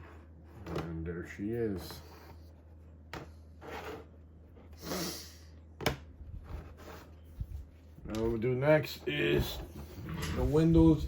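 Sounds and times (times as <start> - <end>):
low electrical hum: 0.0 - 11.0
person sniffing: 4.7 - 5.6.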